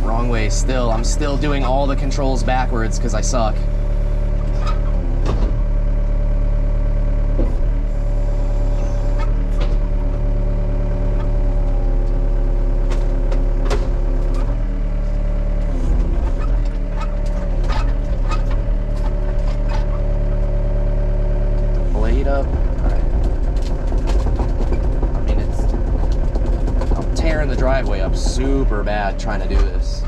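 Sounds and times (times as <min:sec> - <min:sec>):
excavator diesel engine: 0:00.0 - 0:30.0
sharp clicks and cracks: 0:22.5 - 0:28.4.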